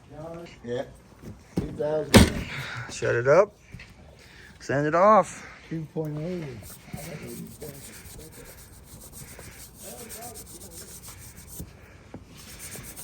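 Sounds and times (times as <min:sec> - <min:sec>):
fast rubbing: 0:06.6 - 0:11.8, 0:12.4 - 0:13.0.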